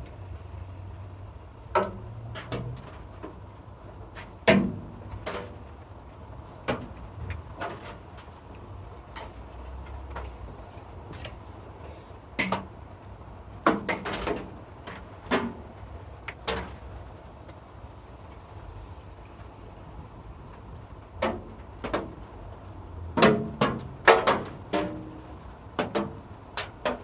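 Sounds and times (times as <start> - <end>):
sharp clicks and knocks: 21.2 - 22.4, 23.1 - 27.0.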